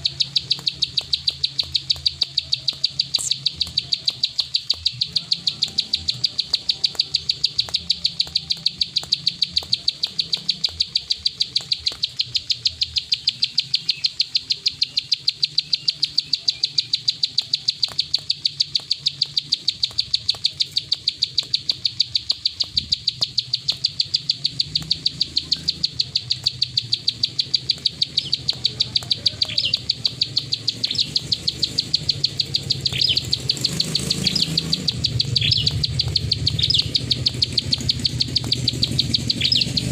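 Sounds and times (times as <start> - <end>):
bird chirps: 0.0 - 39.9
bird clicking call: 0.0 - 39.9.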